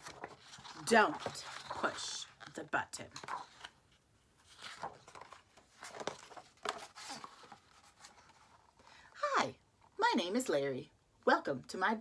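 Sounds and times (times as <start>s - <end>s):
paper pages rustling: 0.0s - 9.0s.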